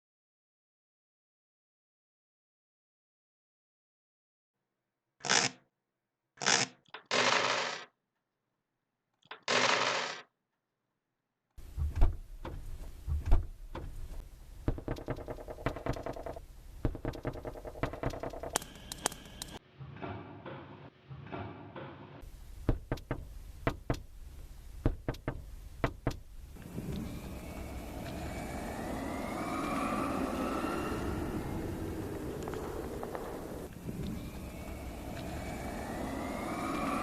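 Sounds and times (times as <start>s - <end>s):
sharp clicks and knocks: 11.8s - 20.6s, 22.6s - 24.1s, 24.8s - 26.3s
spaced knocks: 22.7s - 24.1s, 24.8s - 26.2s
humming mechanical tone: 26.3s - 37.0s
rising steady noise: 26.5s - 37.0s.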